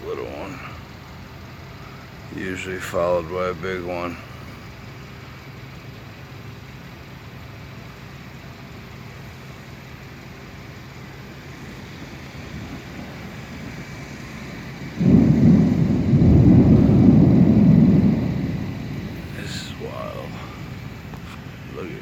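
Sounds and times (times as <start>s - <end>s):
low background noise: 0.0s - 22.0s
thunder clap and rumble: 11.6s - 21.7s.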